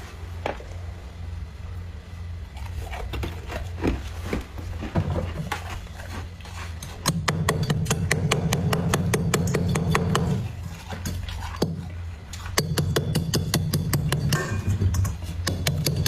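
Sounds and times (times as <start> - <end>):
low hum: 0.0 - 16.0.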